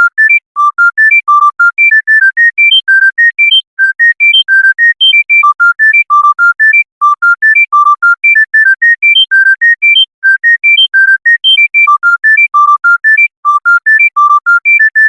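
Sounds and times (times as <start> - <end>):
smartphone ringtone melody: 0.0 - 15.0.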